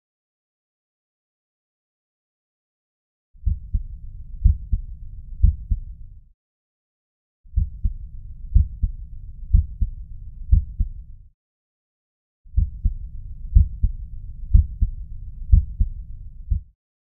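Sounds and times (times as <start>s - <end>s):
heartbeat through stethoscope: 3.4s - 4.8s, 5.4s - 5.9s, 7.5s - 9.9s, 10.5s - 11.0s, 12.5s - 16.7s.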